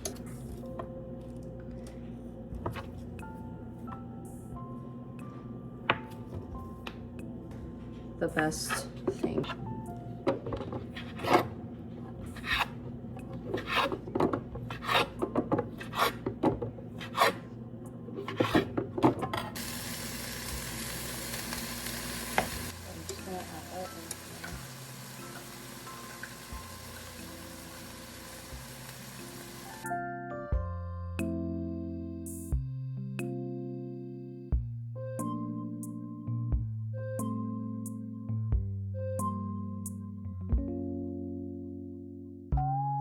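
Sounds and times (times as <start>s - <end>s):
food sizzling in a hot pan: 19.6s - 29.8s.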